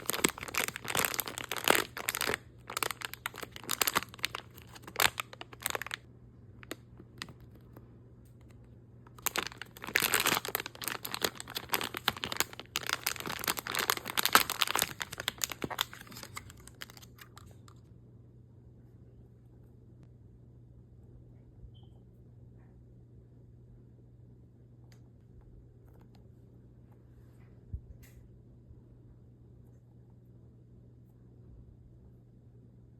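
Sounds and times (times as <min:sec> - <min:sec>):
packaging crinkling and tearing: 0:00.0 - 0:07.6, 0:09.1 - 0:17.8.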